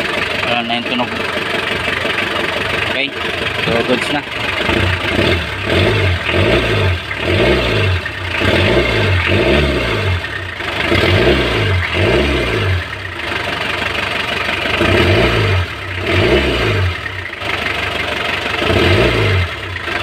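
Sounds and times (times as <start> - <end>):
engine revving: 0.0 - 20.0.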